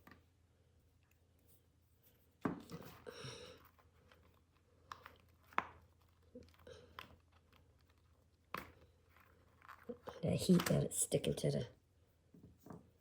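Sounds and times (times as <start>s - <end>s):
crinkling rustle: 2.7s - 10.9s.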